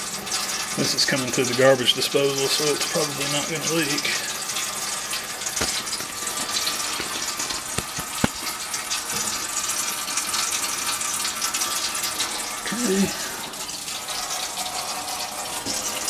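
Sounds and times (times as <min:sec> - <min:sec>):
faucet running into sink: 0:00.0 - 0:16.0.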